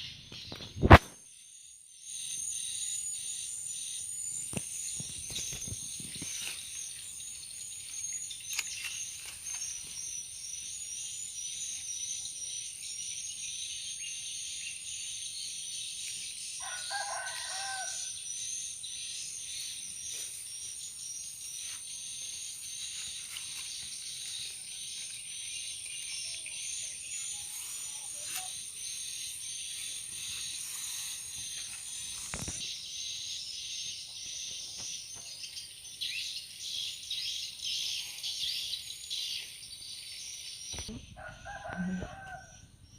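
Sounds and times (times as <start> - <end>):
insects chirping: 0.0 - 42.9
rooster crowing: 16.6 - 18.2, 41.0 - 42.7.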